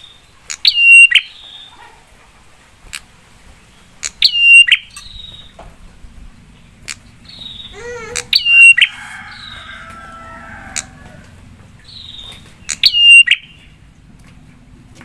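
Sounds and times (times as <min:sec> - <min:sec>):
bird sharp rapid calls: 0:04.0 - 0:05.6, 0:06.8 - 0:11.2, 0:11.8 - 0:13.8.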